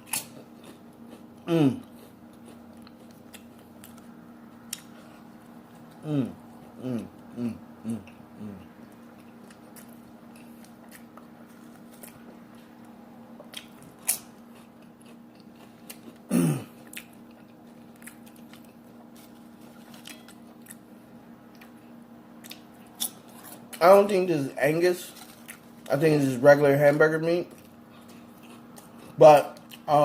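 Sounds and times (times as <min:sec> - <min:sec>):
person chewing and biting: 0:00.0 - 0:23.8, 0:25.1 - 0:25.9, 0:27.5 - 0:30.0
falling voice hum: 0:01.5 - 0:01.9, 0:06.0 - 0:08.7.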